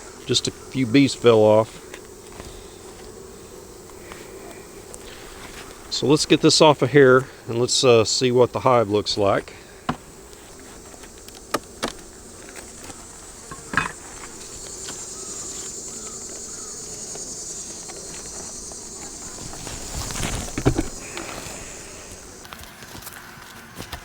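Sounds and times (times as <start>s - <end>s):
insects buzzing: 0.0s - 24.0s
wooden hive parts knocking: 9.2s - 22.6s
high-pitched insect chirring: 10.5s - 22.5s.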